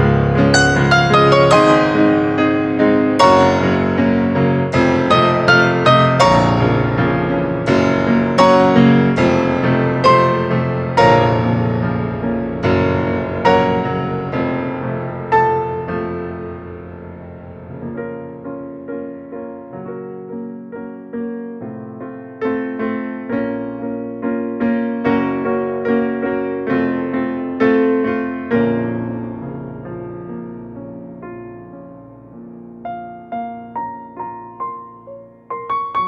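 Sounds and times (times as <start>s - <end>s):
synthesizer melody with chords: 0.1s - 14.4s.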